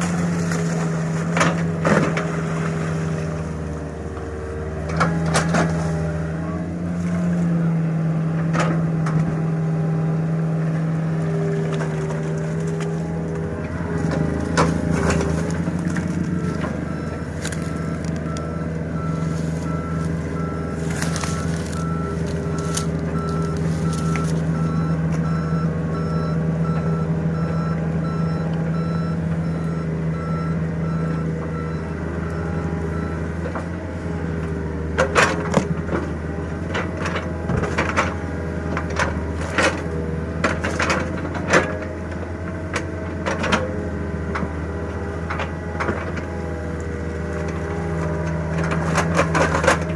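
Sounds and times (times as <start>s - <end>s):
diesel engine running: 0.0s - 49.9s
sharp knocks and cracks of digging: 14.0s - 18.5s, 19.2s - 24.5s
backup alarm beeping: 16.4s - 33.4s.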